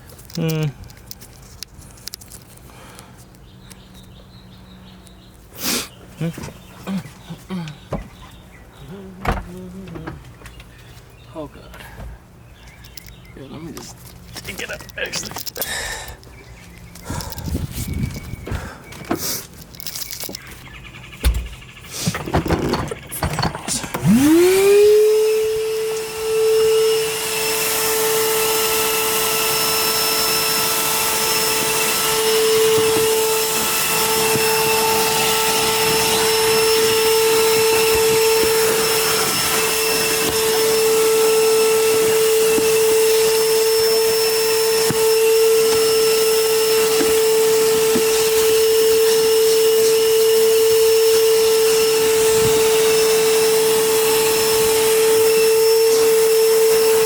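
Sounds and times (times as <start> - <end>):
vacuum cleaner whining: 2.9 - 12.0, 21.2 - 57.0.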